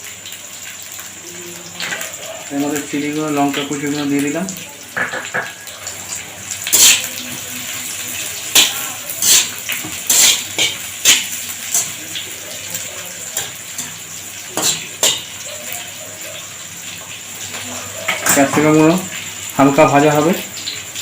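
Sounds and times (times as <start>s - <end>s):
vegetables sizzling in hot oil: 0.0s - 21.0s
metal spatula scraping a wok: 6.7s - 7.0s, 8.5s - 12.0s, 14.6s - 15.4s.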